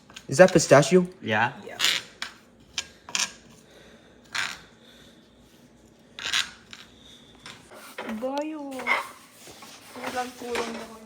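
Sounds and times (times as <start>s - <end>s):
kitchen utensils clinking: 7.5s - 11.0s.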